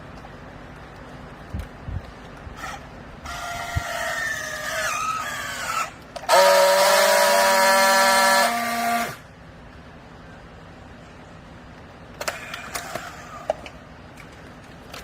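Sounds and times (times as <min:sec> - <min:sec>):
loud steady buzz: 0:01.0 - 0:14.0.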